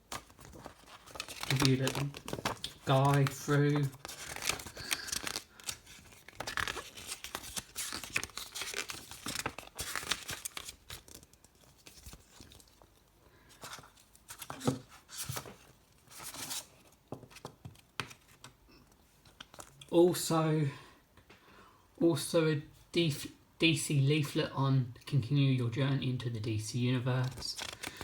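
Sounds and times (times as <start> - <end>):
paper rustling and crinkling: 0.0 - 18.6, 19.2 - 19.8, 27.2 - 28.0.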